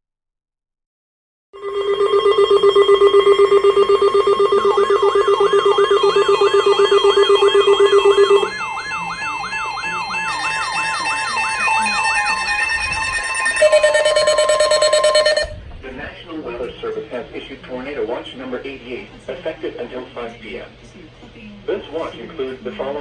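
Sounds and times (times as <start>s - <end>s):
fast-pulsing low alert tone: 1.6s - 15.6s
siren-like warble: 1.6s - 15.6s
steady high alert tones: 1.6s - 15.6s.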